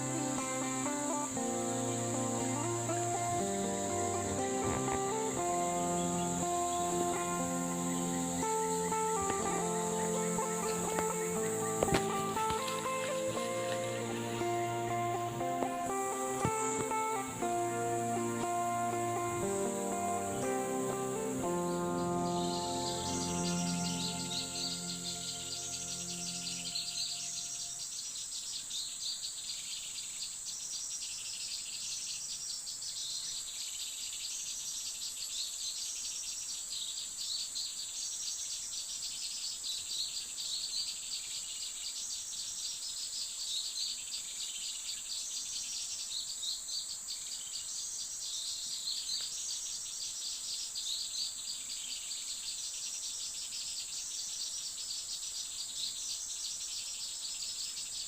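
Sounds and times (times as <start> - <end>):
insect drone with chirping: 0.0 - 58.0.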